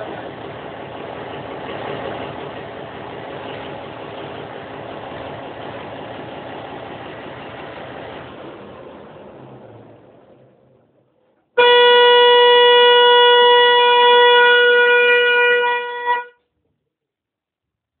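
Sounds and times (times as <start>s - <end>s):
boat engine running down: 0.0s - 16.3s
loud steady horn tone: 11.6s - 16.4s.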